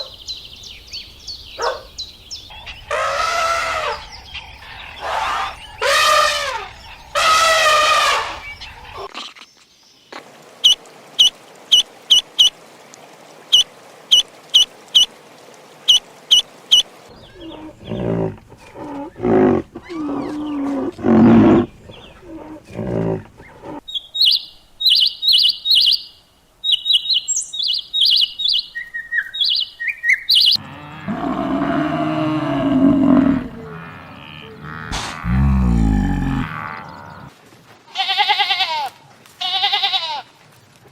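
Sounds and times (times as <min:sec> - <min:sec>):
low pitched animal calls: 0:02.5 - 0:09.1, 0:30.6 - 0:37.3.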